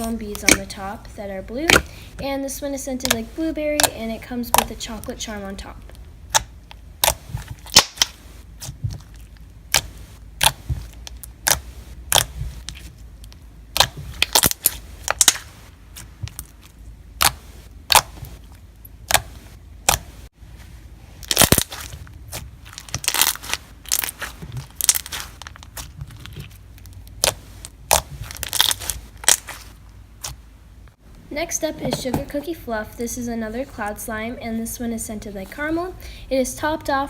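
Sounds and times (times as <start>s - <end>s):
slime with foam beads squished: 0.0s - 2.2s, 3.0s - 5.2s, 6.0s - 30.6s.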